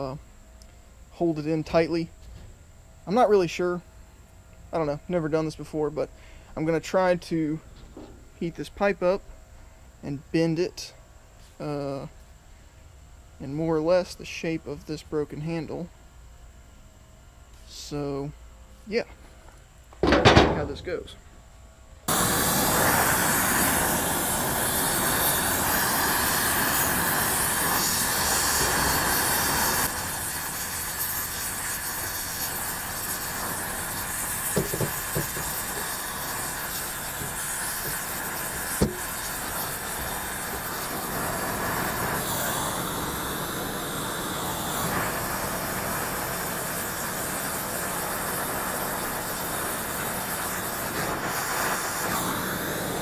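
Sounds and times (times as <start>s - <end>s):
torch flame hissing: 22.0s - 53.0s.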